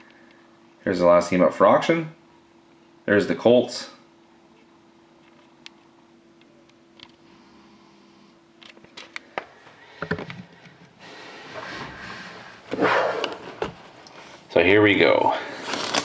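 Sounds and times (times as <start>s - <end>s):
faint steady hum: 0.0s - 16.0s
packaging rustling: 15.5s - 16.0s.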